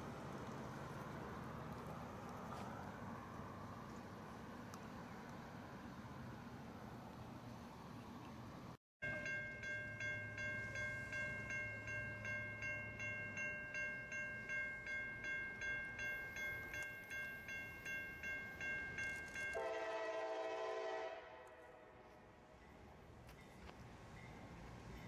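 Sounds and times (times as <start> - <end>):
railroad crossing bell ringing: 9.0 - 21.0, 22.5 - 25.0
locomotive horn: 19.5 - 22.3.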